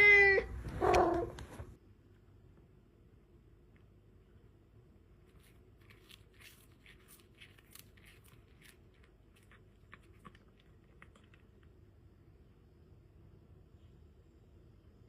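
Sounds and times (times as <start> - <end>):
faint small clicks and crackles: 5.3 - 11.8.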